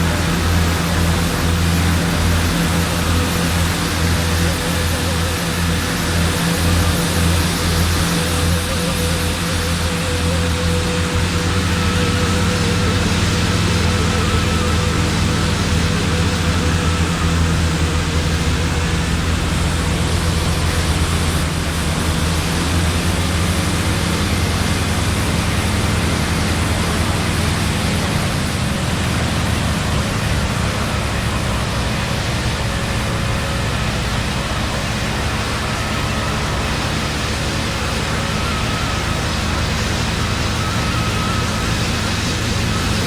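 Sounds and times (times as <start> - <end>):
low steady drone: 0.0 - 43.0.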